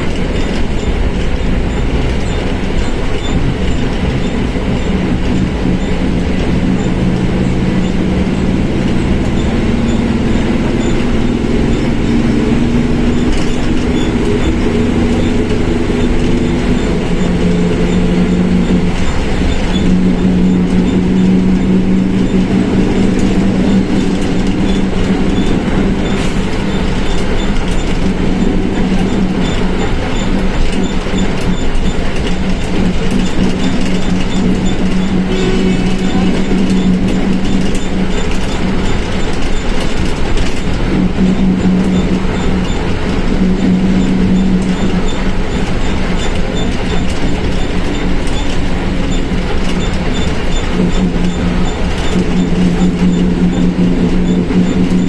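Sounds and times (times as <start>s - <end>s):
bus engine droning: 0.0s - 55.0s
transmission growling: 3.3s - 55.0s.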